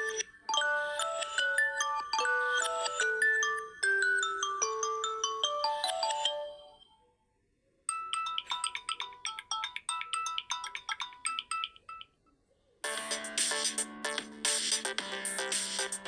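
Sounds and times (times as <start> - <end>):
quick ringtone of rapid notes: 0.0 - 6.8, 7.9 - 12.1
ringtone of held notes: 0.0 - 7.1, 7.9 - 12.2, 12.8 - 16.0.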